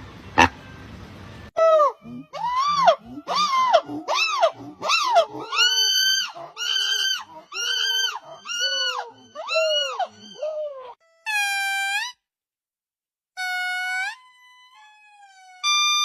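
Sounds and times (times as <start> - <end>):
monkey screeching calls: 1.6 - 12.2, 13.4 - 16.0.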